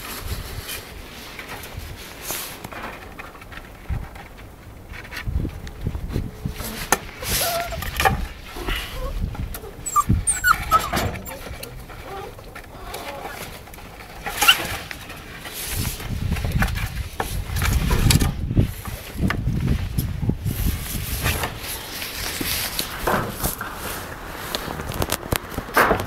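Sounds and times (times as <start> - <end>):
puppy whimpering: 7.2 - 13.6.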